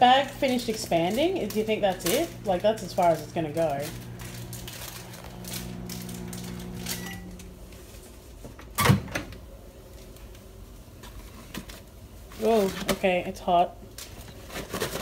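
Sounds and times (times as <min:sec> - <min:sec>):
microwave oven humming: 0:00.0 - 0:10.0
microwave beep: 0:05.7 - 0:07.5.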